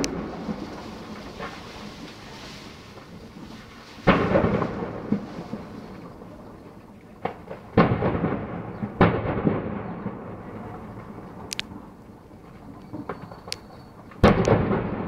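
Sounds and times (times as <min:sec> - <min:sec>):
heavy explosion blasts: 0:00.0 - 0:13.4, 0:14.2 - 0:15.0
smaller explosion bang: 0:04.0 - 0:06.3, 0:07.2 - 0:11.5, 0:14.2 - 0:15.0.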